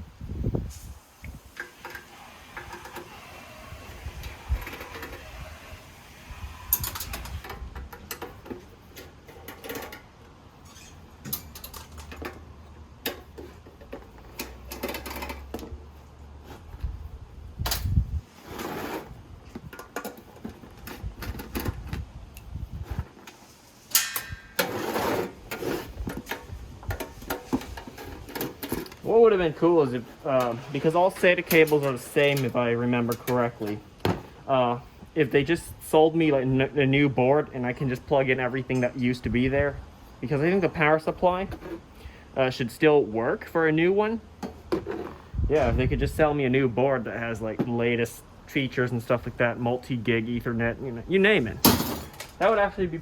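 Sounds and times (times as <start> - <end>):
metal parts clicking and rattling: 6.8 - 12.4.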